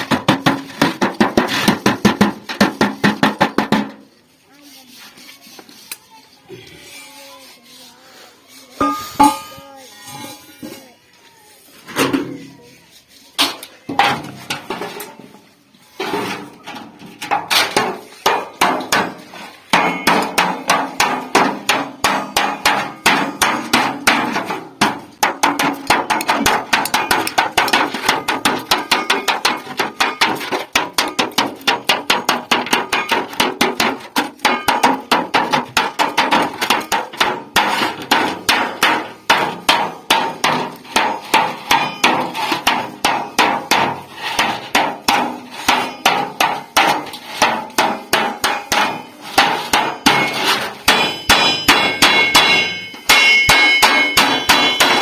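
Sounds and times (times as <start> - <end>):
hammer ringing on sheet metal: 8.8 - 9.7, 17.8 - 55.0.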